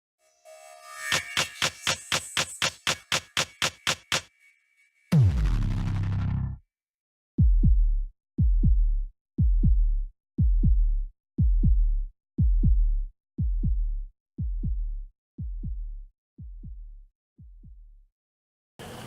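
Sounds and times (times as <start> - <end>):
electronic music bass thumps: 5.1 - 6.6, 7.4 - 18.0.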